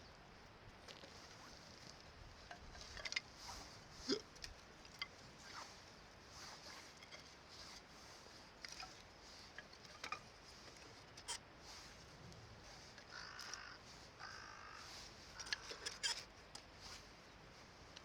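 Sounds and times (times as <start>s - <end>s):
crow cawing faintly: 13.1s - 16.2s.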